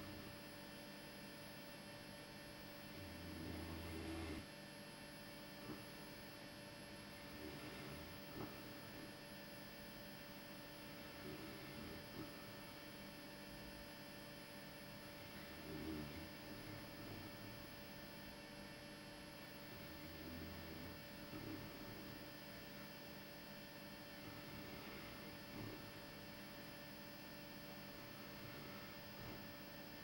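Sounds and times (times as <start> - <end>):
faint snoring: 0.0 - 30.0
steady electrical hum: 0.0 - 30.0.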